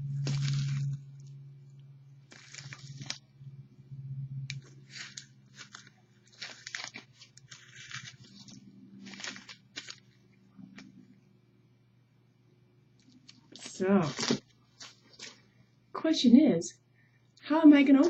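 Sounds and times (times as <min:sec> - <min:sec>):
plastic wrap crinkling: 0:00.0 - 0:01.4, 0:02.2 - 0:03.3, 0:04.5 - 0:11.0, 0:13.0 - 0:15.5
steady low hum: 0:00.0 - 0:16.0.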